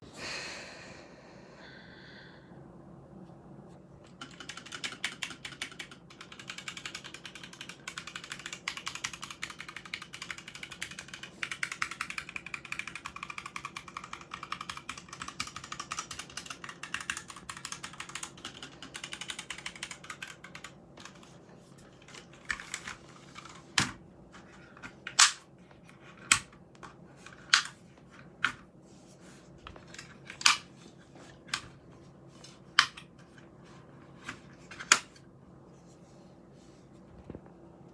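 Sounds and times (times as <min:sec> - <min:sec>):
mechanical keyboard typing: 0:04.0 - 0:24.0, 0:24.8 - 0:28.6, 0:29.8 - 0:30.7, 0:32.6 - 0:33.4.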